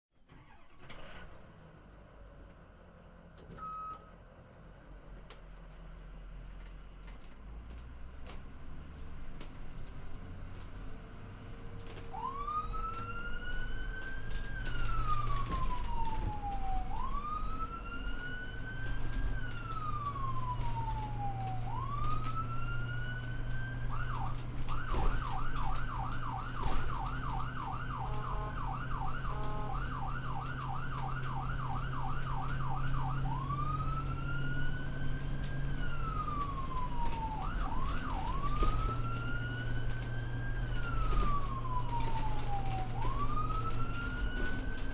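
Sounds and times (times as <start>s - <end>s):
ambulance siren: 0.4s - 1.2s, 3.5s - 4.1s, 11.8s - 44.9s.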